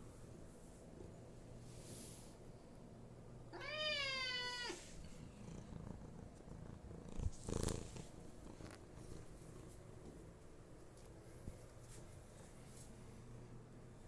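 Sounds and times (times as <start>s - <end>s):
cat meowing: 3.5s - 4.8s
cat purring: 5.0s - 10.1s.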